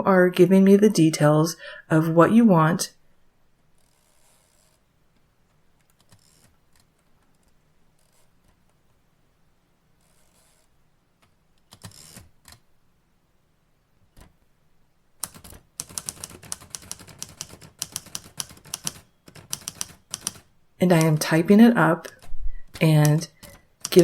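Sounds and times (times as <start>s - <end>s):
typewriter keys clacking: 15.2s - 21.4s, 22.0s - 24.0s.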